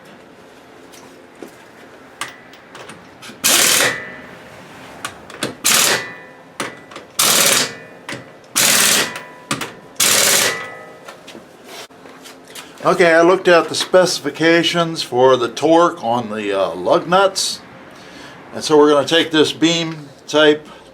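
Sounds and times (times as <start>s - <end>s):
impact wrench hammering: 2.2s - 4.3s, 5.0s - 11.0s.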